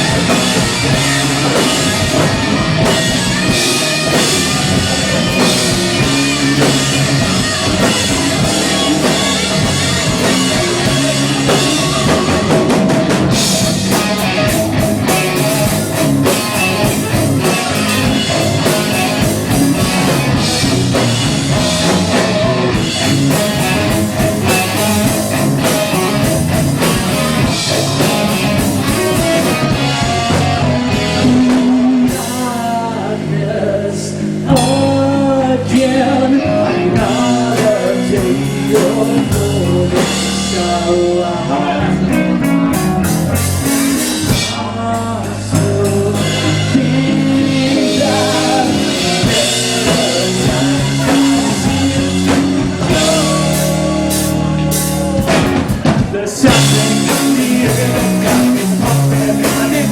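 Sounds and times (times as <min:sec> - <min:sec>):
drum kit steady beat: 0:00.0 - 0:33.3, 0:37.0 - 0:59.9
electric guitars: 0:00.0 - 0:59.9.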